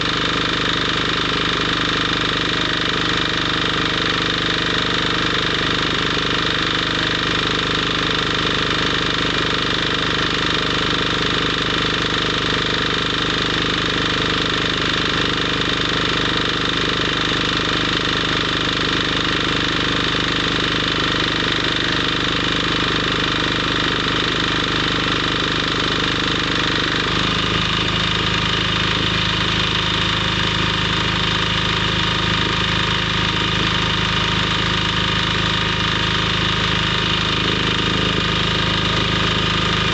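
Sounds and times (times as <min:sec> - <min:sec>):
machine drone: 0:26.0 - 0:39.9.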